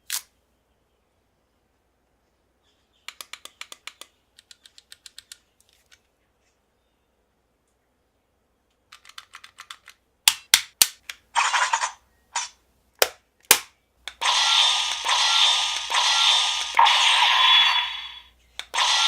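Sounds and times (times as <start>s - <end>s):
sharp plastic clicks: 3.0s - 6.1s, 8.7s - 11.3s, 13.0s - 14.2s, 18.6s - 18.8s
toy electronic sound effect: 14.2s - 19.0s.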